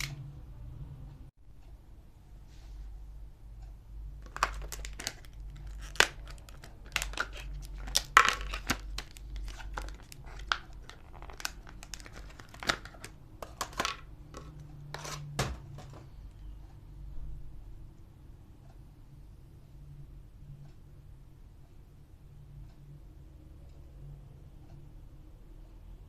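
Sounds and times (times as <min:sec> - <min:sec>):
packaging crinkling and tearing: 0:04.2 - 0:15.2.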